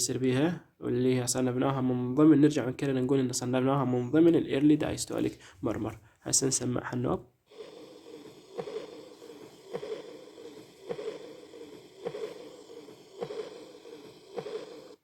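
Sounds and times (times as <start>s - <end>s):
heartbeat through a stethoscope: 7.5s - 15.0s
soft blowing heart murmur: 7.5s - 15.0s.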